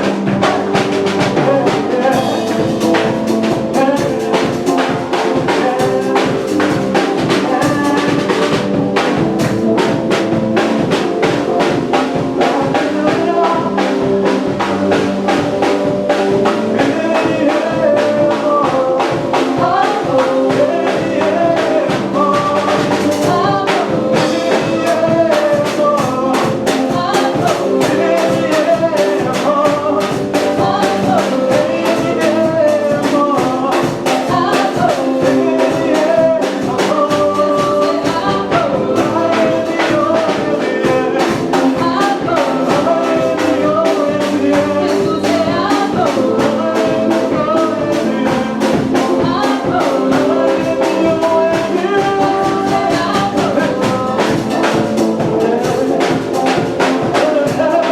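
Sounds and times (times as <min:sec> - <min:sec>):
band music with fast drum beat: 0:00.0 - 0:57.9.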